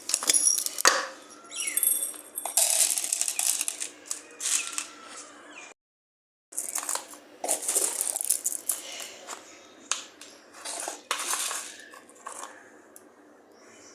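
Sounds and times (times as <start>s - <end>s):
crunchy snack rustling: 2.5s - 5.3s, 6.6s - 9.4s, 10.0s - 12.7s.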